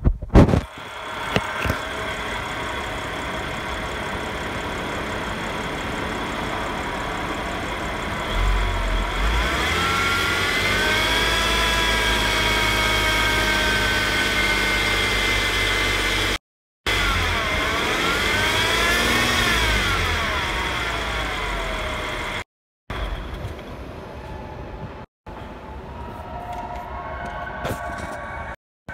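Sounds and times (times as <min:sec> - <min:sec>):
car engine revving with whine: 0:00.4 - 0:23.4.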